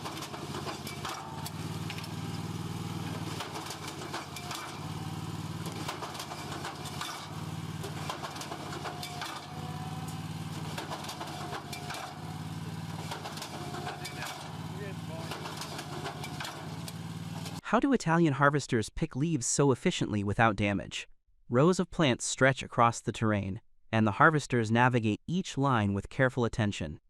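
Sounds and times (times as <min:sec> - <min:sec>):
farm machine engine droning: 0:00.0 - 0:17.6
mechanical clatter and knocks: 0:00.0 - 0:17.6.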